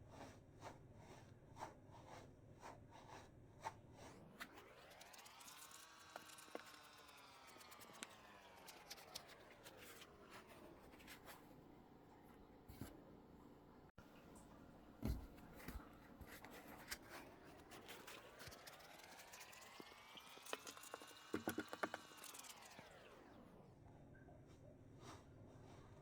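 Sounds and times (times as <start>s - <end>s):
soft thump: 15.0s - 15.8s.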